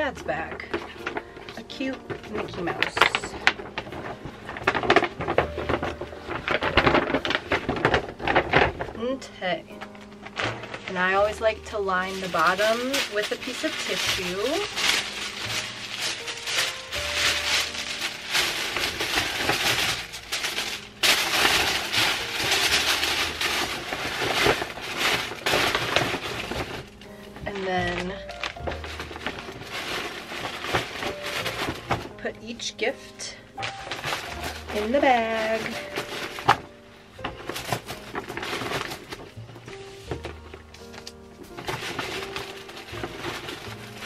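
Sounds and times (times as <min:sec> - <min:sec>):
tissue paper rustling: 0:00.0 - 0:44.0.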